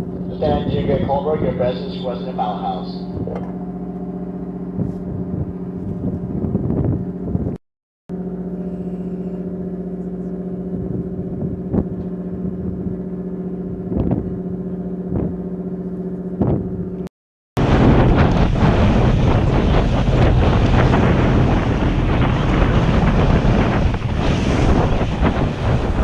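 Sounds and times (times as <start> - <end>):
machinery hum: 0.0 - 7.2, 8.1 - 17.0.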